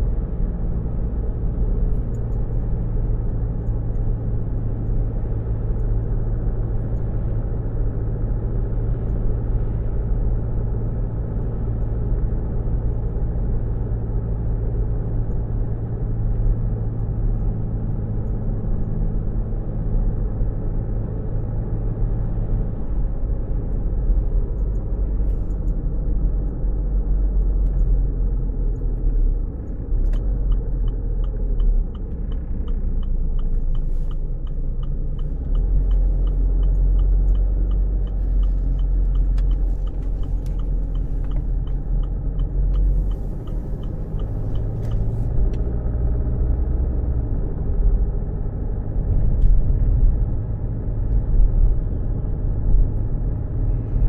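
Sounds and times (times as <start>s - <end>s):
car cabin rumble: 22.8s - 46.5s
turn signal ticking: 23.6s - 46.8s.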